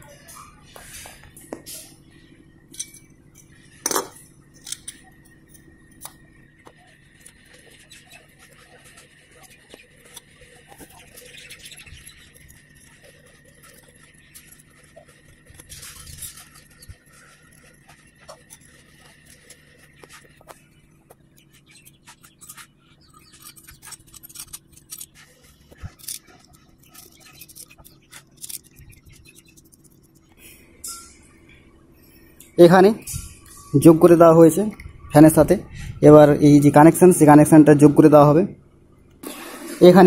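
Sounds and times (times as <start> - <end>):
clicks of metal motor parts: 2.7 - 5.4, 22.1 - 31.1.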